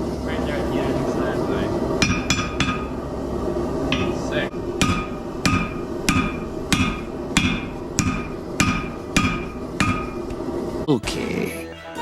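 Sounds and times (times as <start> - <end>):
hammer striking steel on anvil: 2.0 - 3.0, 3.9 - 10.4.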